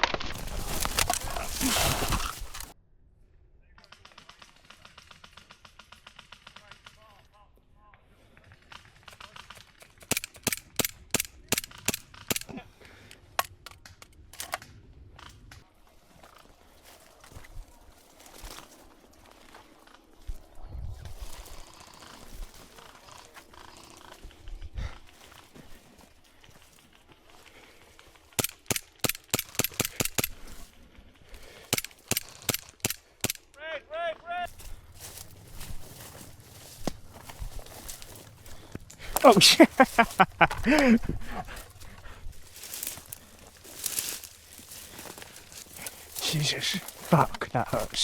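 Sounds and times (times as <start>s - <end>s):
airsoft rifle shots: 9.2s - 12.5s, 28.4s - 30.4s, 31.7s - 33.5s.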